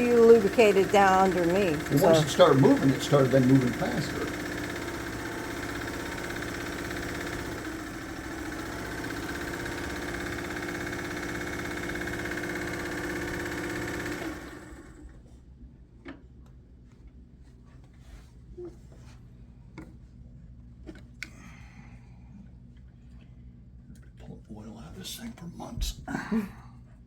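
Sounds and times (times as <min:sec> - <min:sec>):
sewing machine running: 0:00.0 - 0:15.2.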